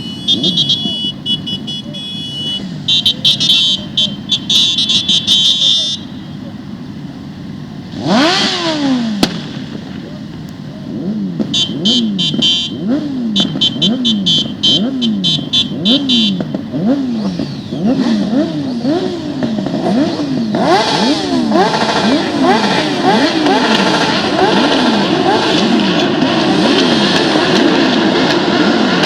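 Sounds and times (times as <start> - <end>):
off-road motorcycle engines revving: 0.0 - 29.0.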